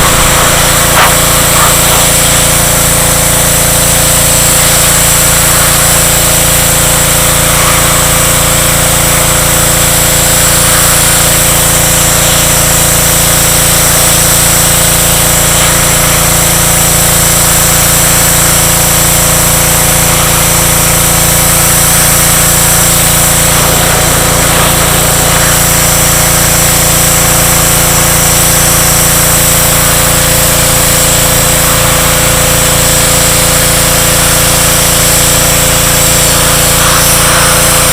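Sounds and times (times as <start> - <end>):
pressure washer machine drone: 0.0 - 37.9
water jet hissing: 0.0 - 37.9.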